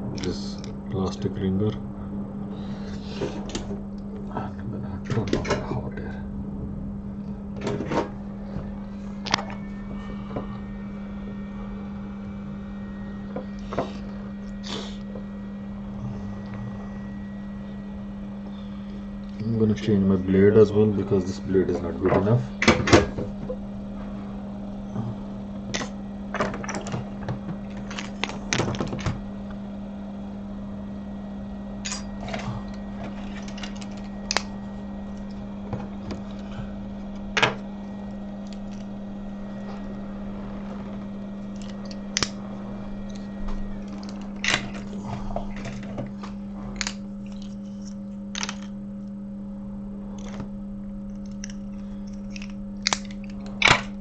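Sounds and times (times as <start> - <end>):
low electrical hum: 0.0 - 54.0
small tools clicking and tapping: 51.2 - 53.9.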